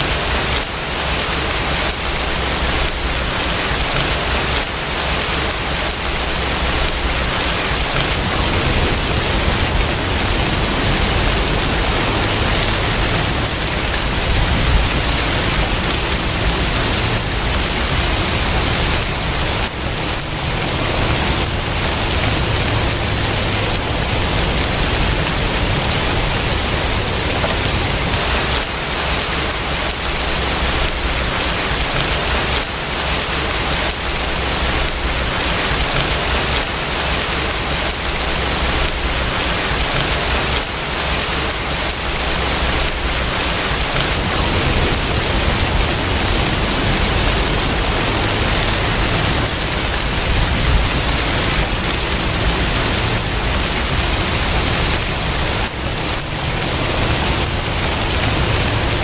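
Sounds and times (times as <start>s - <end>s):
rain falling: 0.0s - 59.0s
low rumble: 6.0s - 28.4s, 44.0s - 59.0s.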